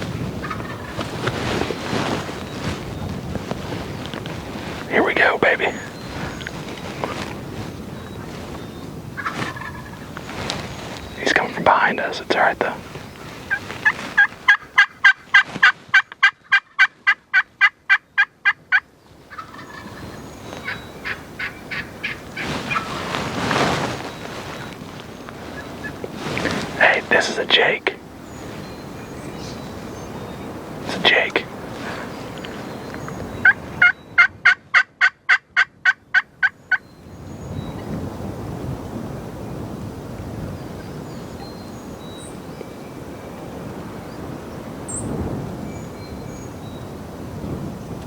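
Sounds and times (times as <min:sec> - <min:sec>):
wind noise: 0:00.0 - 0:16.3, 0:19.2 - 0:34.7, 0:36.8 - 0:48.0
wild turkey yelping: 0:14.2 - 0:20.0.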